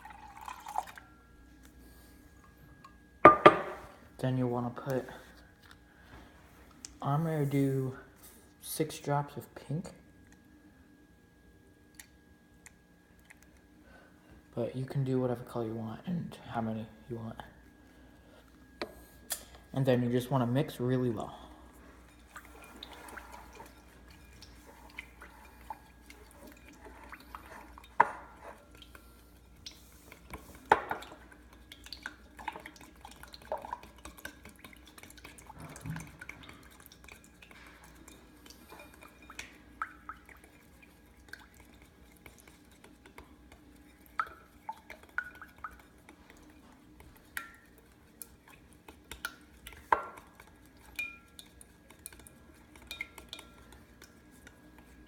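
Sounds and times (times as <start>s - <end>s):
spoon stirring in a bowl: 18.7s - 55.0s.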